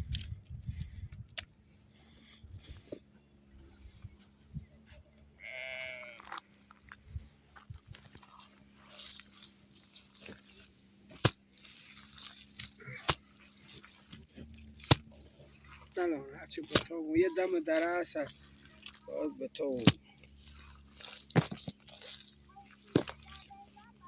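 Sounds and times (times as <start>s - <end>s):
goat bleating: 5.4s - 6.4s.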